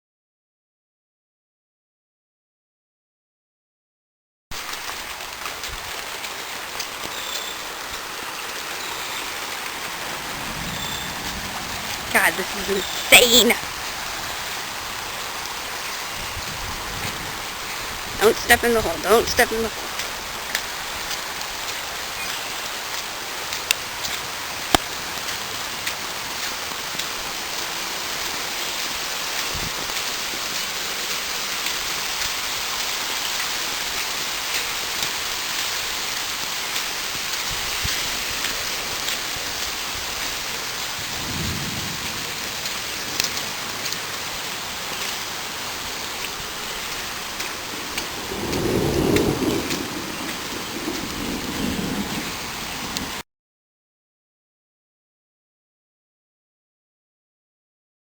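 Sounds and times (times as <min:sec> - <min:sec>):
rain hiss: 0:04.5 - 0:53.2
thunder rumbling: 0:09.7 - 0:20.4, 0:37.5 - 0:53.2.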